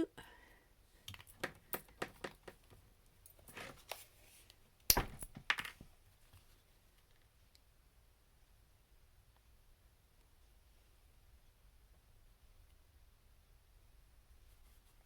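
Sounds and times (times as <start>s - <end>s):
plastic pieces clicking and tapping: 1.0s - 2.7s.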